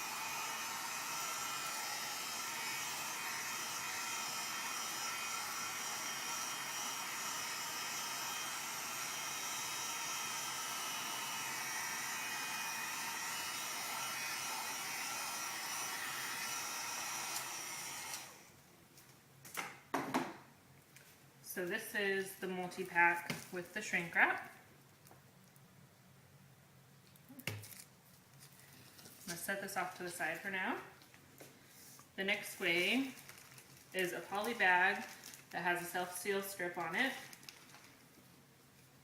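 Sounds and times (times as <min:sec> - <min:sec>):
electric heat gun blowing: 0:00.0 - 0:18.5, 0:34.0 - 0:37.3.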